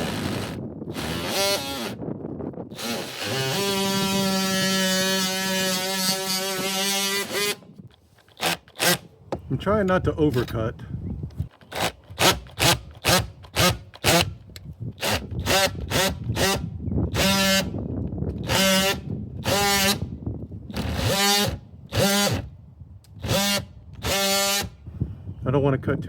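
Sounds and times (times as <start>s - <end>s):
oscillating multi-tool buzzing: 0.0s - 2.0s, 2.7s - 7.6s, 15.0s - 17.8s, 18.4s - 20.1s, 20.7s - 22.5s, 23.2s - 24.8s.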